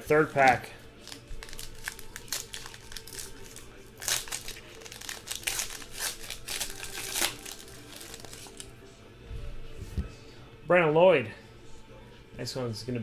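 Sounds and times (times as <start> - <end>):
card pack wrapper crinkling: 0.1 - 8.7.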